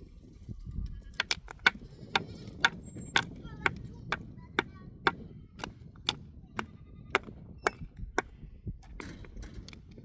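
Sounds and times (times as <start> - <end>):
hand tool striking: 1.2 - 8.4.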